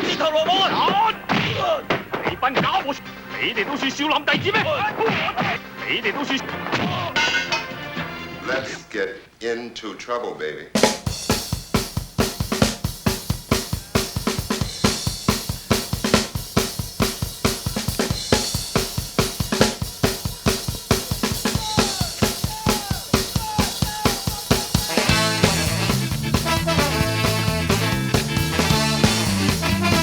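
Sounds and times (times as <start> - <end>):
bass and band playing: 0.0 - 8.8, 10.8 - 30.0
drum kit beat: 10.8 - 30.0.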